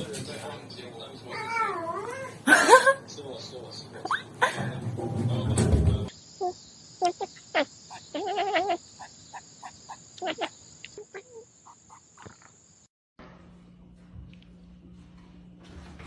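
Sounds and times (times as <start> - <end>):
animal warbling trill: 6.4 - 8.8, 10.2 - 12.5
small animal chirping: 6.4 - 12.5.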